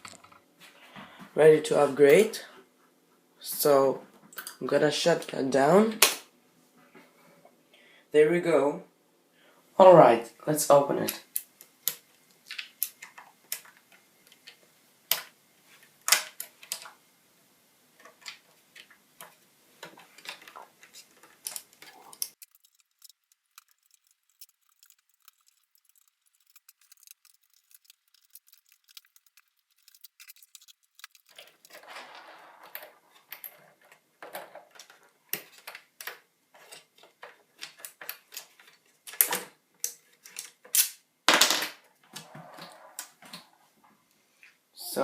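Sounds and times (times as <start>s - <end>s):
metallic clicks of hand tools: 21.9s - 31.8s.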